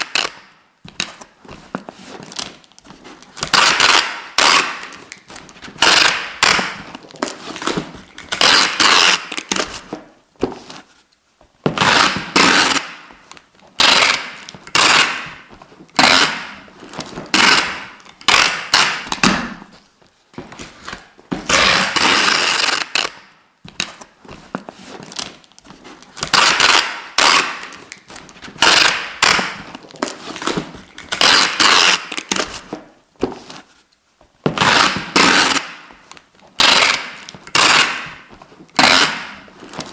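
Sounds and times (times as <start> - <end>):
adhesive tape pulled off roll: 3.4 - 9.8, 11.8 - 13.1, 13.8 - 15.4, 21.5 - 24.0, 26.2 - 32.6, 34.6 - 35.9, 36.6 - 38.2.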